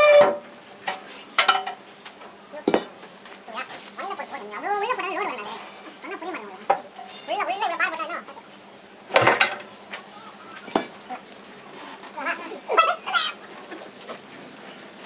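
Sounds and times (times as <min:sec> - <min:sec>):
steel pieces clanking: 0:07.0 - 0:07.8.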